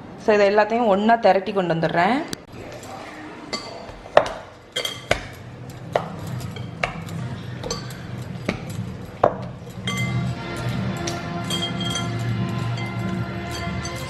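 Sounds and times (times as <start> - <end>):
metal clinking against mixing bowl: 3.5 - 14.0
background music: 4.6 - 14.0.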